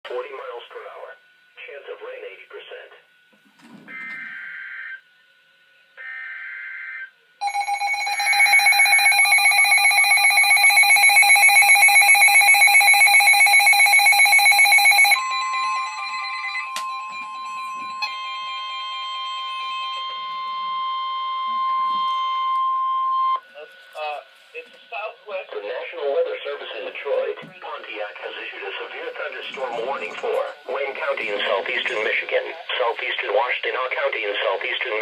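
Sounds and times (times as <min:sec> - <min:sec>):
steady single-pitch alert tone: 0:06.0 - 0:23.4.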